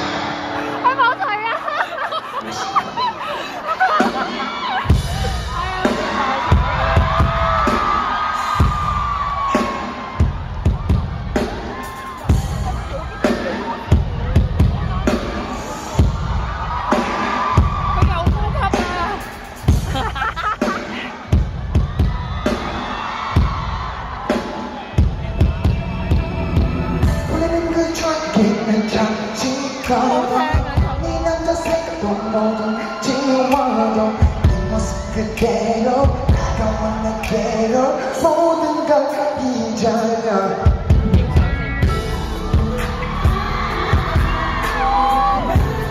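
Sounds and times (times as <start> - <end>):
crowd cheering and screaming: 0.0 - 45.9
live pop music: 0.0 - 45.9
heavy kick drum beat: 4.9 - 24.4, 25.0 - 27.8, 30.5 - 31.8, 34.2 - 37.5, 40.7 - 45.9
person singing: 26.1 - 45.9.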